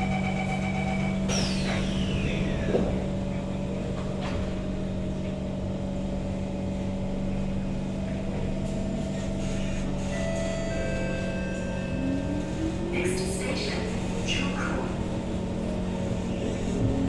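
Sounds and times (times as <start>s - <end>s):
high whine falling in pitch: 0.0s - 3.8s
train electrical hum: 0.0s - 17.0s.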